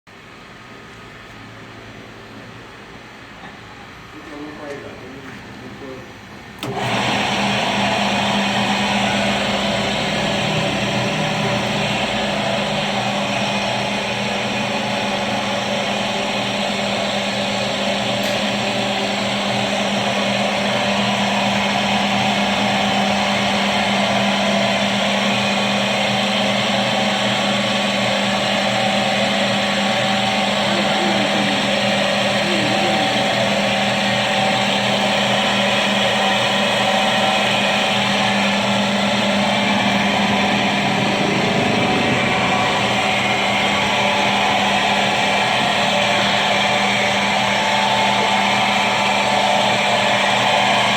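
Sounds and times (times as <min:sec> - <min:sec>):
stone-drilling machine grinding: 0:06.6 - 0:13.4, 0:35.4 - 0:46.5.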